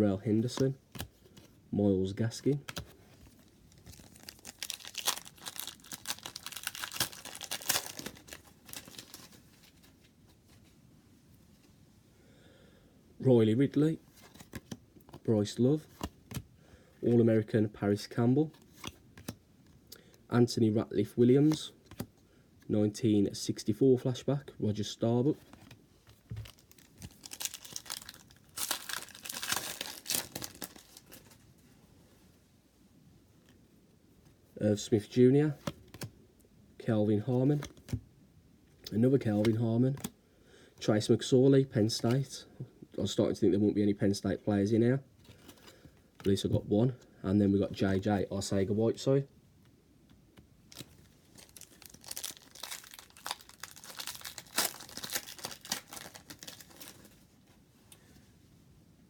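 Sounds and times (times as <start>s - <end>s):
wrapper crinkling and tearing: 3.7s - 9.9s, 26.4s - 31.4s, 50.7s - 57.2s.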